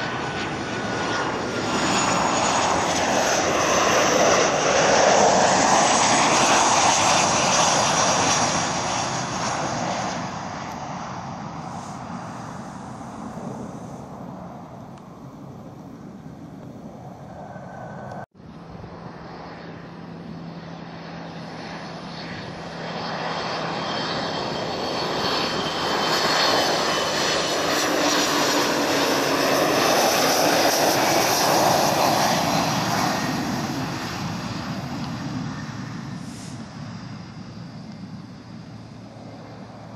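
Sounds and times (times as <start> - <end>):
jet airliner engines passing: 0.0 - 39.9.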